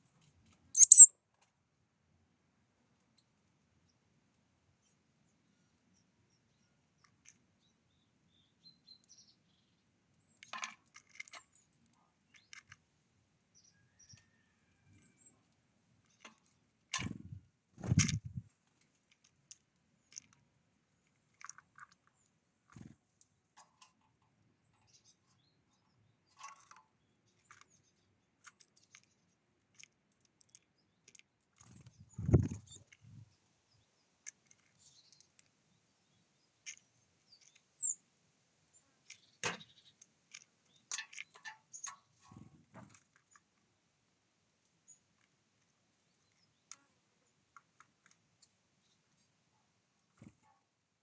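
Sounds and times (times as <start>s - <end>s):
birds pecking at seed: 0.2s - 1.1s, 10.2s - 13.0s, 13.6s - 25.5s, 26.1s - 38.1s, 38.7s - 43.8s, 44.6s - 49.4s
bird chirp: 0.8s - 1.1s, 33.7s - 38.0s.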